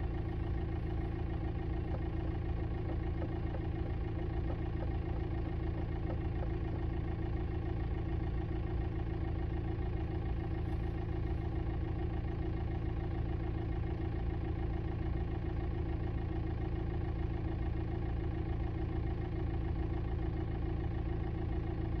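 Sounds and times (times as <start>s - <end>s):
dashboard knocking and buzzing: 0.0s - 7.6s
diesel engine idling: 0.0s - 22.0s.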